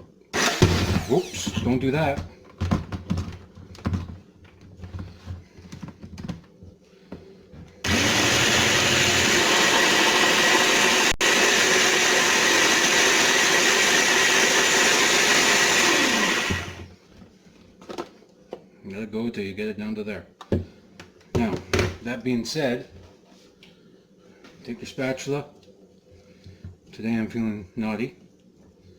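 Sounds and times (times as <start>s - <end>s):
electric food processor chopping: 0.4s - 1.6s, 7.8s - 16.9s.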